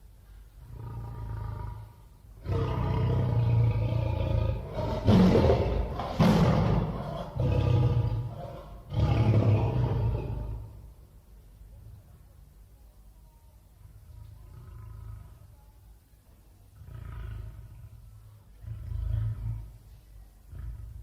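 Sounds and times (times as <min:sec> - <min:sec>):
big cat roaring: 0:00.6 - 0:10.8, 0:14.0 - 0:15.5, 0:16.8 - 0:19.8, 0:20.5 - 0:21.0
low growl: 0:00.6 - 0:10.9, 0:13.8 - 0:15.6, 0:16.7 - 0:21.0.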